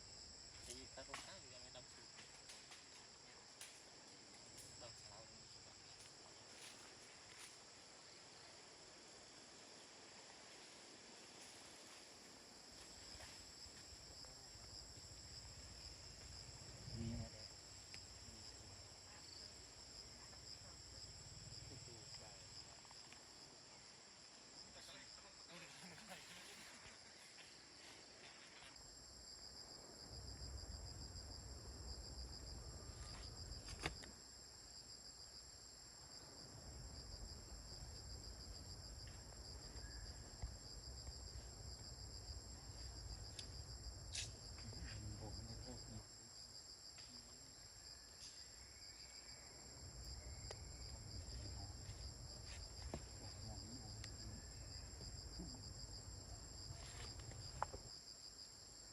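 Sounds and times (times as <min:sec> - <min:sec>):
insects chirring: 0:00.0 - 0:58.9.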